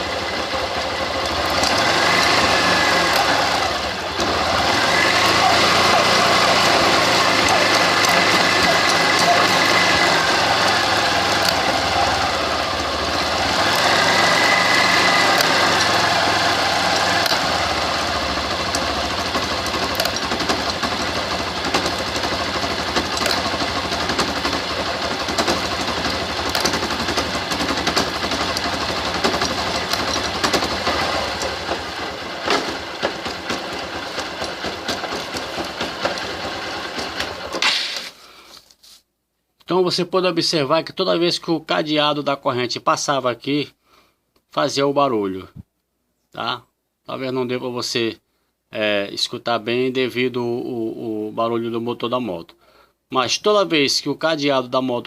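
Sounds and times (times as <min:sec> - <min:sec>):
motorcycle engine running: 0:00.0 - 0:38.0
drive chain clicking: 0:00.8 - 0:37.6.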